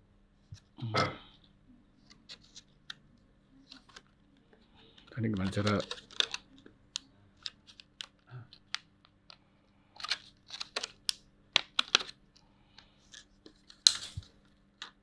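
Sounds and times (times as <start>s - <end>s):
laptop parts clicking and tapping: 5.3s - 9.4s, 10.0s - 12.2s.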